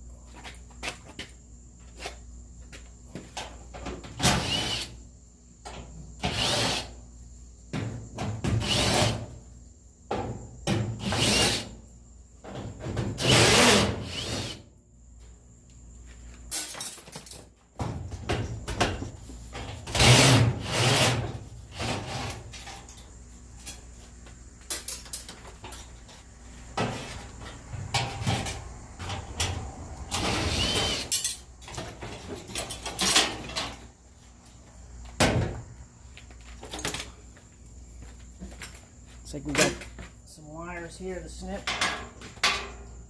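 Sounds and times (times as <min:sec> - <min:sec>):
sheet metal clanks and rattles: 0:31.6 - 0:33.9, 0:41.6 - 0:42.8.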